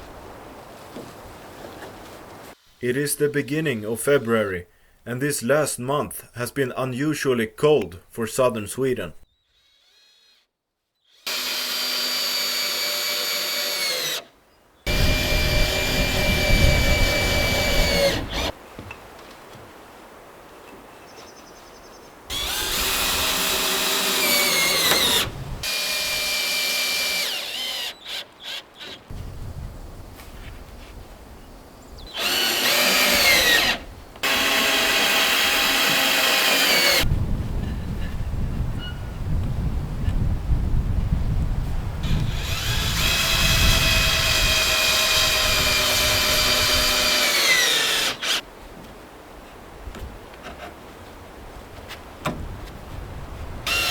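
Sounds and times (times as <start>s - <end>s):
power tool motor whining: 11.1s - 14.3s, 14.9s - 18.6s, 22.3s - 29.0s, 32.2s - 37.1s, 42.0s - 48.4s, 53.7s - 53.9s.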